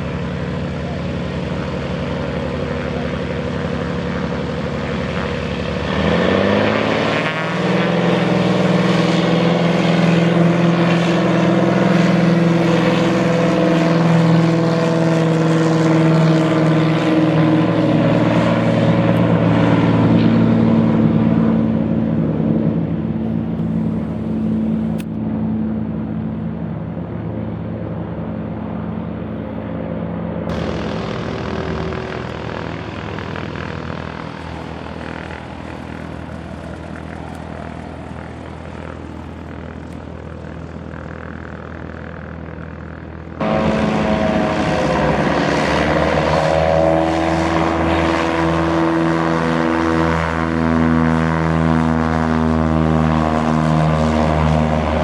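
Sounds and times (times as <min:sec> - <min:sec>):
propeller airplane engine droning: 0:00.0 - 0:55.0.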